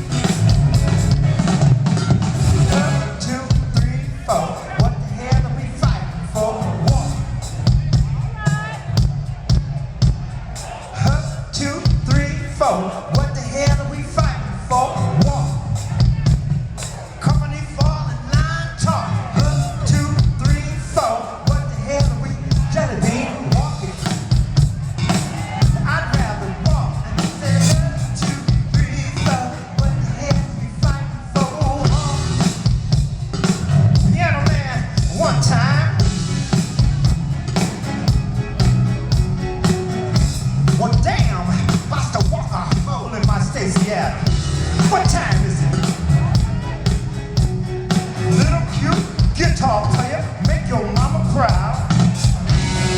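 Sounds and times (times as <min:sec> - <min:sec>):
drum kit beat: 0:00.0 - 0:52.9
heavy bass: 0:00.0 - 0:52.9
live funk band playing: 0:00.0 - 0:52.9
voices singing: 0:00.0 - 0:52.9.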